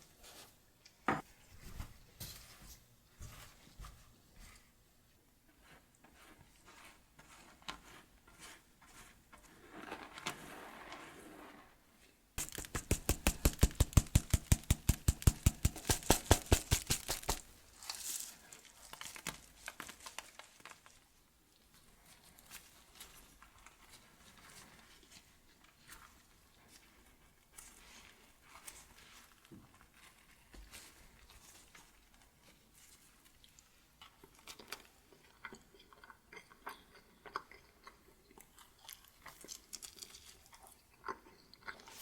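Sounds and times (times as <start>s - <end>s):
kitchen utensil knocking rapidly: 12.4s - 17.5s
handling and rustling: 12.4s - 21.0s.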